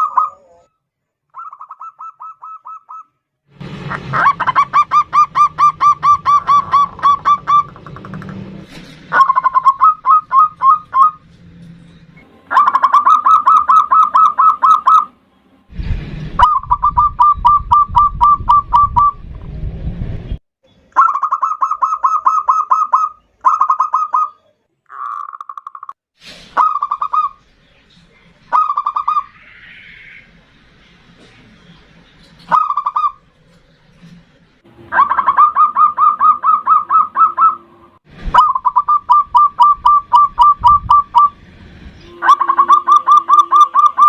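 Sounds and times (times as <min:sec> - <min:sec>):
low rumbling noise: 0:03.5 - 0:13.7, 0:15.1 - 0:20.4
dove cooing: 0:04.1 - 0:08.2.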